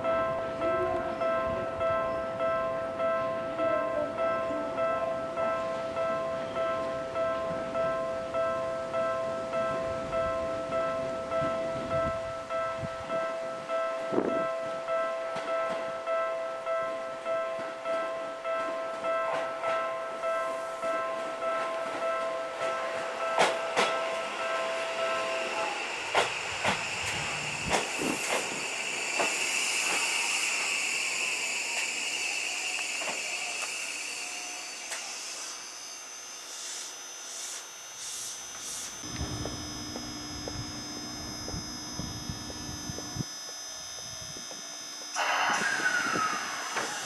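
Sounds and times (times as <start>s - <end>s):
train equipment whine: 0.0s - 47.0s
compressed air hissing: 26.2s - 33.5s.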